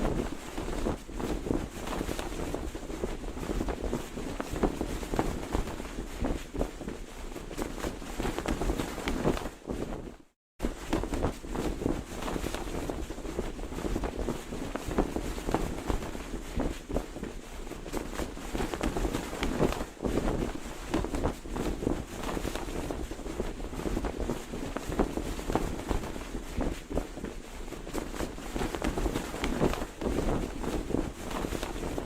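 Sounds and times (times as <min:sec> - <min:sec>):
flag flapping: 0:00.0 - 0:32.0.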